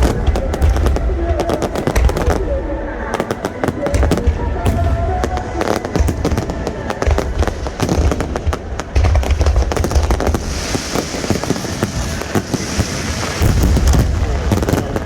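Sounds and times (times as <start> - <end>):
deep firework booms: 0.0 - 15.0
firework shell bursts and crackling: 3.2 - 15.0
hiss of crackle stars: 10.4 - 15.0.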